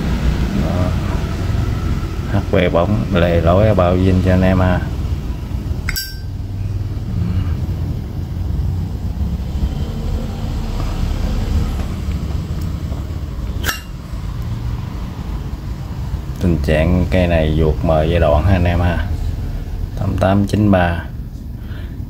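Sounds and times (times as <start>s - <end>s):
low hum: 0.0s - 17.5s.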